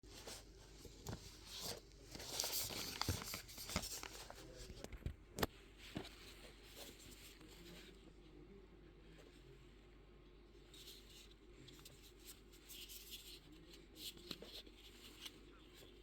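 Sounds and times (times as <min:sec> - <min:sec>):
packaging rustling: 0:00.2 - 0:04.9.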